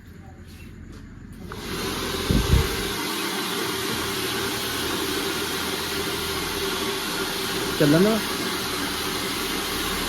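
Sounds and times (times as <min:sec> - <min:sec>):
faint motor hum: 0:00.0 - 0:10.0
hair dryer blowing air: 0:01.5 - 0:10.0.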